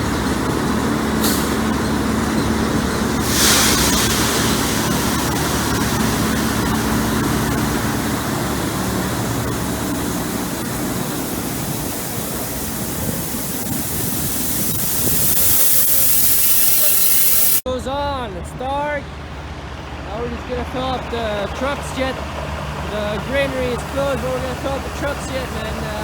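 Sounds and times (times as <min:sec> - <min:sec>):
truck engine running: 0:00.0 - 0:17.6, 0:19.1 - 0:26.0
steady rushing noise: 0:03.1 - 0:17.6.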